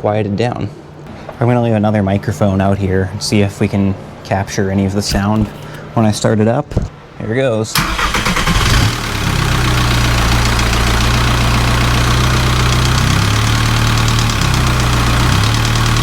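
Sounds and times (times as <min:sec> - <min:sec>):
diesel engine idling: 0:07.7 - 0:16.0
fast engine ticking: 0:07.8 - 0:16.0.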